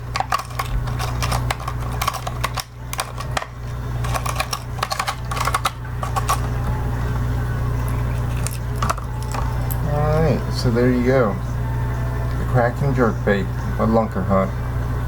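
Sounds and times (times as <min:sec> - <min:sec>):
steady low hum: 0:00.0 - 0:15.0
plastic packaging clicks and crackles: 0:00.1 - 0:06.5.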